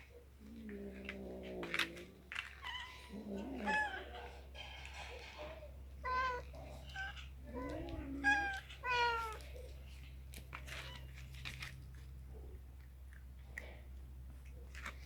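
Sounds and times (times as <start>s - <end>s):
kittens meowing: 2.6s - 4.4s, 6.0s - 10.0s.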